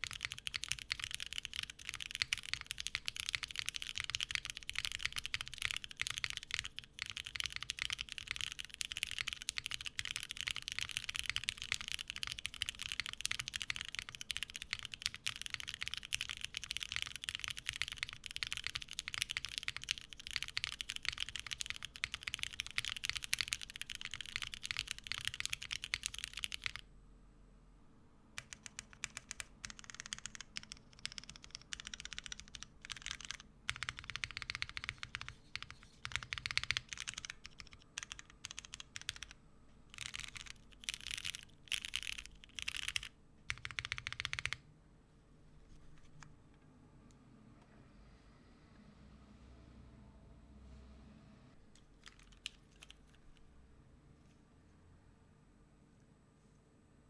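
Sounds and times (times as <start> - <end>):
fast keyboard typing: 0.0 - 26.8, 28.4 - 44.6, 52.0 - 53.2.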